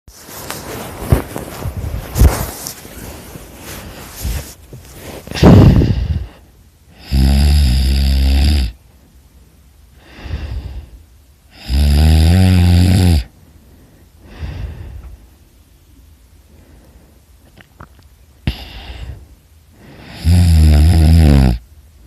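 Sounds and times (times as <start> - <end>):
soft breaths out: 0.4 - 6.6, 8.8 - 11.1, 13.3 - 15.6, 16.4 - 17.5, 18.4 - 20.2
person snoring loudly: 5.3 - 8.8, 11.5 - 13.3, 20.0 - 21.6.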